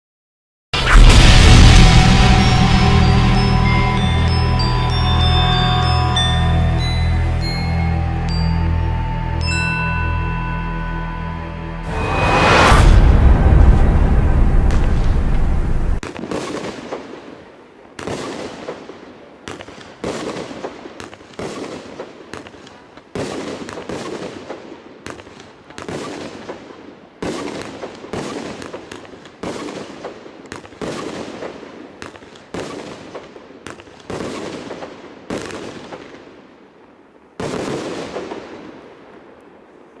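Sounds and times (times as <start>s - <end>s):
fireworks bangs: 11.8s - 17.3s.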